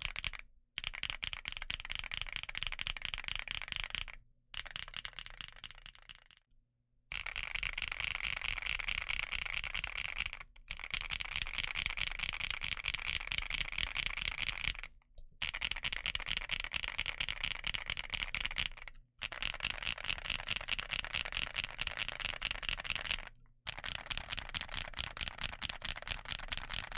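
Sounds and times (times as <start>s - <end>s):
mechanical keyboard typing: 15.6s - 26.9s.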